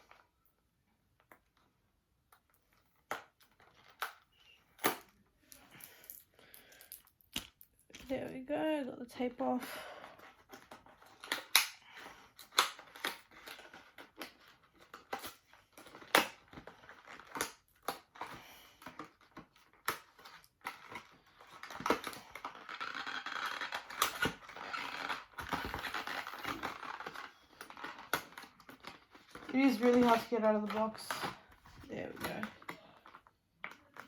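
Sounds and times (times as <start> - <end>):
packaging rustling: 10.2 - 34.0.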